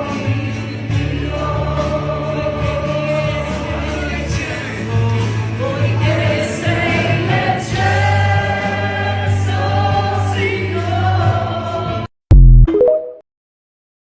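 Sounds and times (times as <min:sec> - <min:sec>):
choir singing: 0:05.6 - 0:11.8
instrumental backing: 0:12.3 - 0:13.2.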